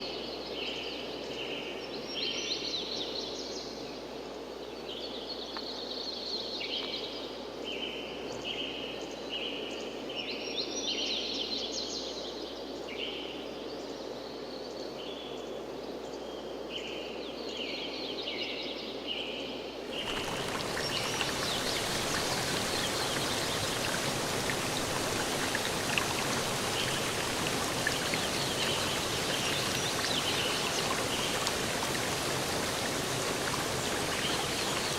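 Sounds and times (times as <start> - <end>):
birds chirping: 19.9 - 34.9
flowing water rushing: 19.9 - 34.9.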